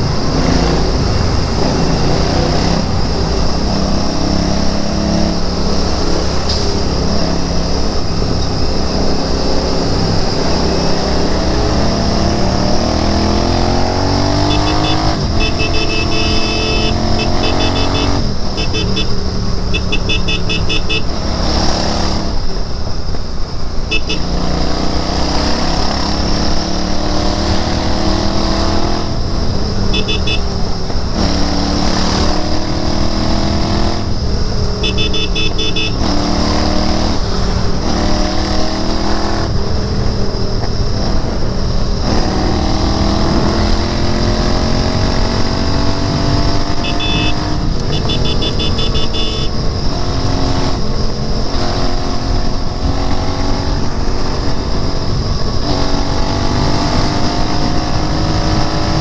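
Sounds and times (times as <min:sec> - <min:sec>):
motorcycle engine accelerating: 0:00.0 - 0:22.5, 0:23.9 - 0:40.3, 0:40.9 - 0:59.0
rapid high-pitched beeping: 0:14.4 - 0:21.1, 0:30.0 - 0:30.5, 0:34.8 - 0:36.0, 0:46.8 - 0:49.5.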